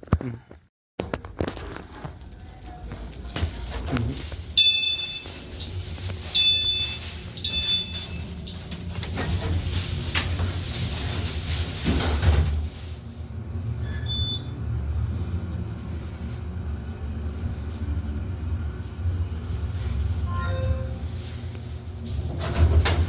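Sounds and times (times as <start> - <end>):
elevator car rumbling: 1.5 - 23.0.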